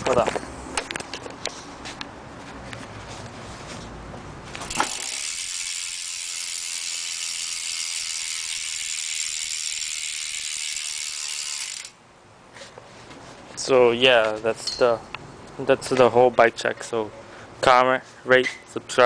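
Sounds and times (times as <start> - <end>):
bicycle hub ratcheting buzz: 4.6 - 12.0.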